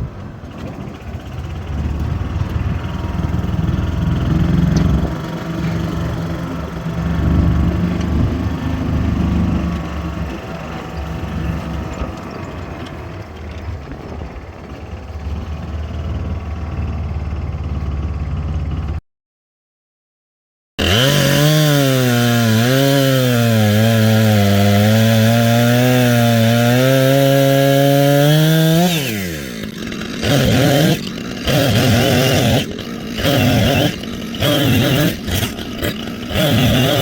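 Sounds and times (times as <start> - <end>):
chainsaw cutting logs: 0.6 - 12.3, 20.8 - 37.0.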